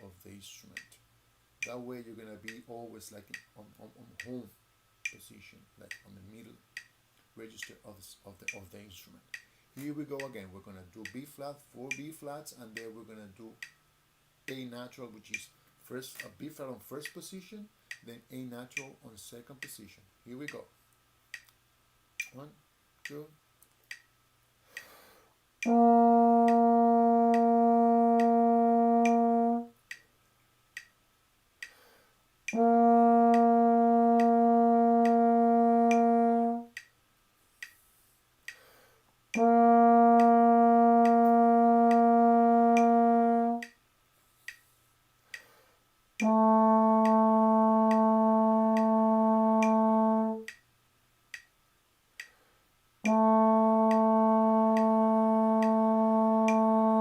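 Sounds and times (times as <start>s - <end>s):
metronome ticking: 0.0s - 7.8s, 8.4s - 13.8s, 14.5s - 15.5s, 17.9s - 19.0s, 19.6s - 20.7s, 22.1s - 25.0s, 25.6s - 30.1s, 30.7s - 31.0s, 31.6s - 37.0s, 38.4s - 43.8s, 46.2s - 50.7s, 53.0s - 57.0s
trombone long notes: 25.6s - 29.8s, 32.5s - 36.7s, 39.4s - 43.7s, 46.2s - 50.5s, 53.1s - 57.0s.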